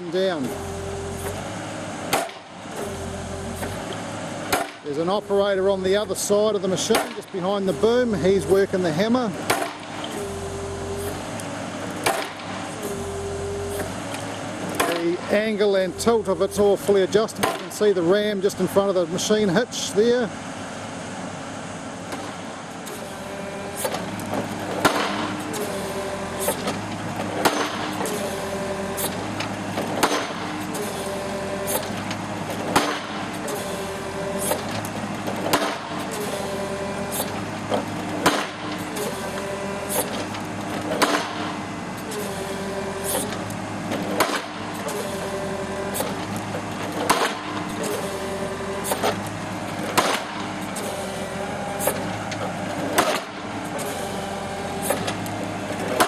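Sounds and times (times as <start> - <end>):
excavator engine and hydraulics: 0.0 - 56.0
pile driver ram strikes: 2.1 - 3.0, 3.6 - 5.0, 6.9 - 7.3, 9.4 - 10.2, 11.9 - 12.6, 23.8 - 37.4, 38.1 - 39.2, 49.8 - 51.0.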